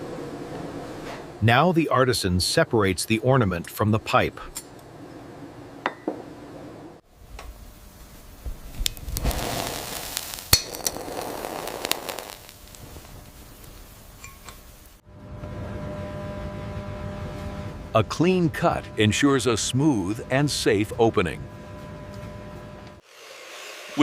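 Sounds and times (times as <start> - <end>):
scraping hiss: 8.4 - 15.0.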